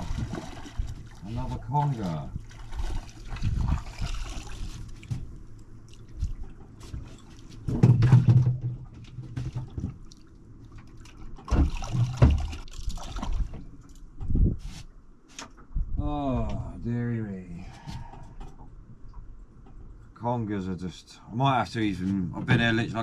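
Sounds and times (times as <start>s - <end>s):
water splashing and dripping: 0.0s - 5.3s, 9.4s - 14.0s
knocks and thumps in a boat: 0.0s - 10.1s, 10.7s - 14.7s, 22.3s - 23.0s.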